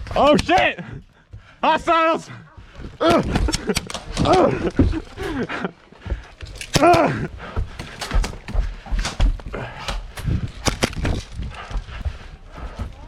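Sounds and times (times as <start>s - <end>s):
running footsteps: 0.0s - 13.0s
gear thudding: 2.6s - 13.0s.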